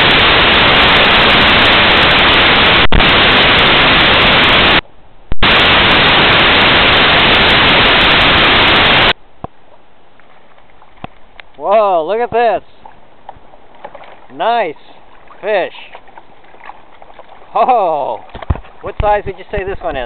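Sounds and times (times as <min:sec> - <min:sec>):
loud static hiss: 0:00.0 - 0:10.1.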